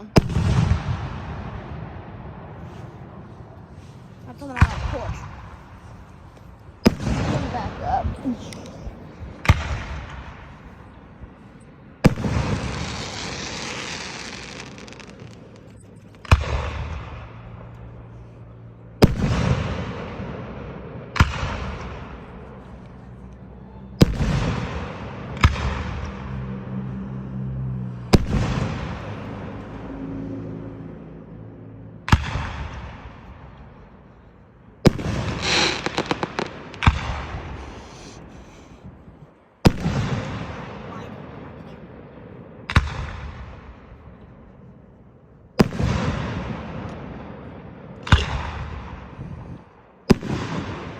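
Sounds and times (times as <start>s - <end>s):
fireworks bursting with rumble: 0.0s - 11.4s, 12.0s - 18.1s, 19.0s - 22.7s, 24.0s - 26.6s, 28.1s - 29.4s, 32.1s - 34.0s, 34.8s - 44.4s, 45.5s - 50.9s
crackling pops: 34.9s - 37.2s.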